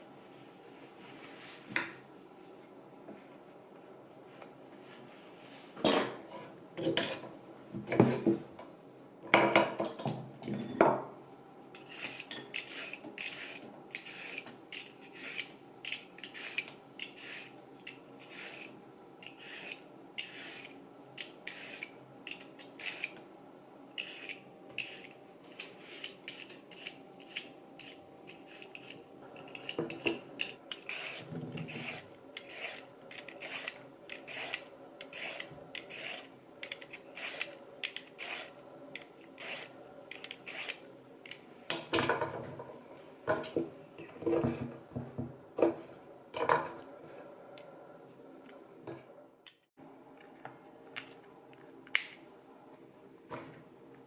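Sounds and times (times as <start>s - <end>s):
short rasping utensil strokes: 30.7s - 36.3s.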